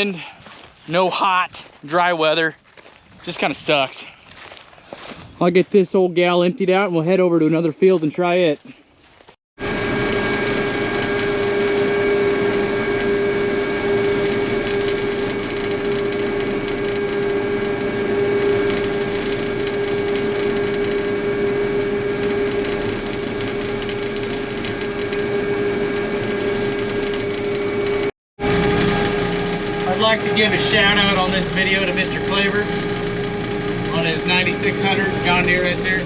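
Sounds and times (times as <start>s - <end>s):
combine mechanical clatter and hum: 9.6s - 36.0s.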